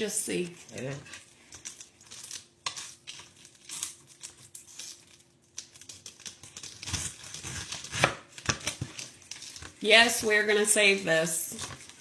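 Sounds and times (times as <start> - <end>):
knife cutting pineapple skin: 5.7 - 9.7.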